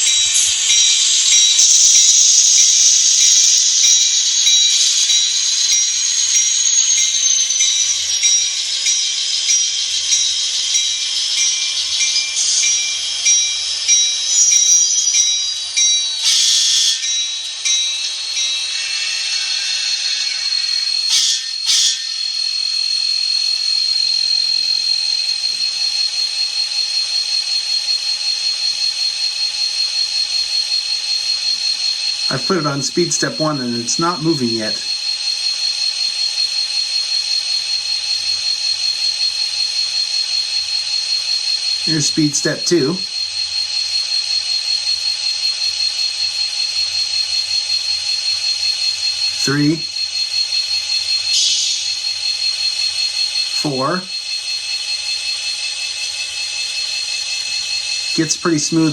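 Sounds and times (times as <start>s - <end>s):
constant high tone: 0.0s - 58.9s
model locomotive diesel idle: 0.0s - 58.9s
short sharp bursts: 16.2s - 17.1s, 18.4s - 22.4s, 51.3s - 52.1s, 53.6s - 54.1s, 58.1s - 58.9s
thin diesel engine drone: 17.8s - 22.2s, 32.3s - 34.9s, 51.3s - 52.1s, 53.6s - 54.1s.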